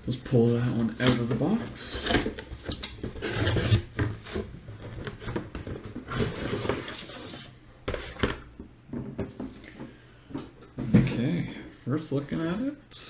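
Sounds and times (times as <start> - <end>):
cardboard packaging rubbing and scraping: 1.2 - 8.2.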